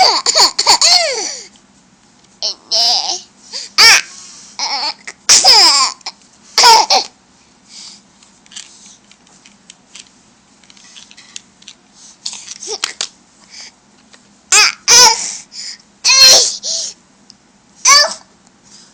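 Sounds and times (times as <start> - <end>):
child laughing and babbling: 12.6 - 13.0.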